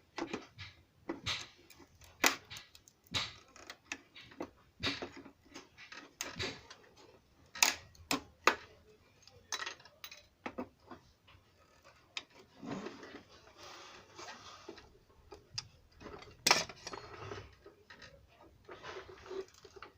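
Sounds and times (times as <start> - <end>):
clicks and taps on plastic: 0.1 - 6.8
rough scraping: 12.4 - 15.0, 18.6 - 19.9.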